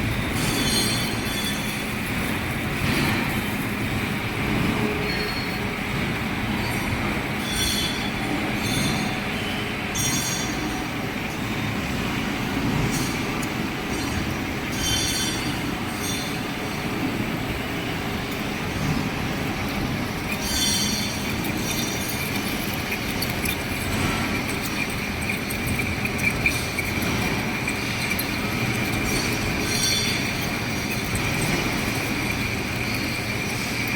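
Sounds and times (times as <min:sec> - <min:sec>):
metal lathe whining: 0:00.0 - 0:33.9
cutting tool squealing: 0:20.2 - 0:33.9.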